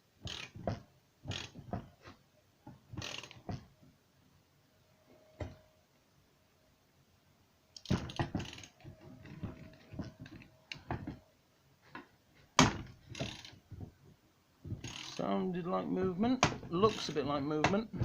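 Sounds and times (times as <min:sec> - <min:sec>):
metallic clicks and creaks: 0:00.2 - 0:03.8, 0:07.8 - 0:11.3, 0:12.8 - 0:14.0, 0:14.7 - 0:15.3, 0:16.4 - 0:18.0.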